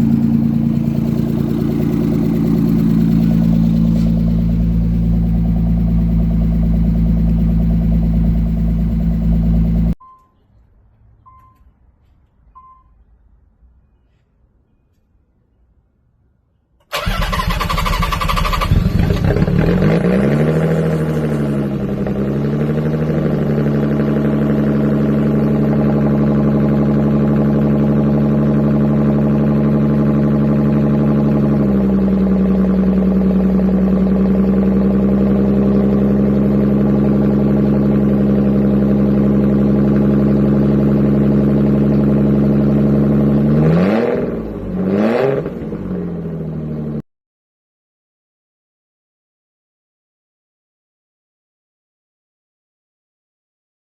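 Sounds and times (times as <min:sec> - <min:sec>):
car engine starting and idling: 0:00.0 - 0:10.0, 0:16.8 - 0:47.0
engine revving: 0:00.0 - 0:10.0, 0:16.9 - 0:47.0.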